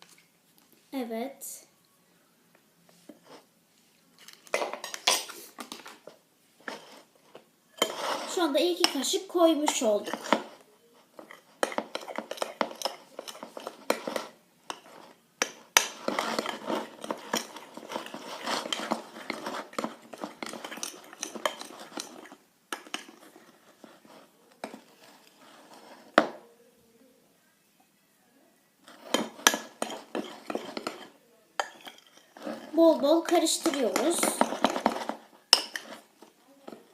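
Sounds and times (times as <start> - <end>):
spoon scraping in a bowl: 6.6 - 26.2, 28.8 - 36.9.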